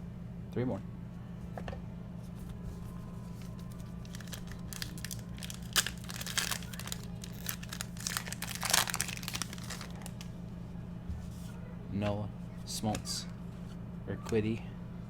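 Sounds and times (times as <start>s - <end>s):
card pack wrapper crinkling: 3.2s - 10.3s.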